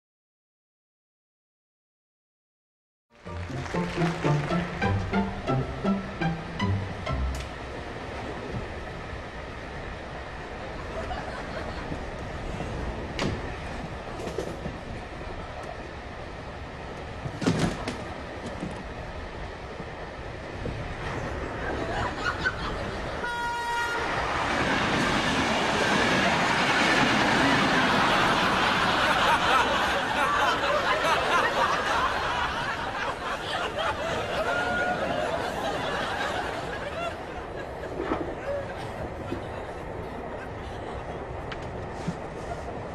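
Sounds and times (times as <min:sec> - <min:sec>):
train rumbling on rails: 0:03.2 - 0:42.9
audience laughing: 0:03.3 - 0:07.3, 0:10.8 - 0:12.3, 0:21.5 - 0:23.4, 0:25.8 - 0:41.4.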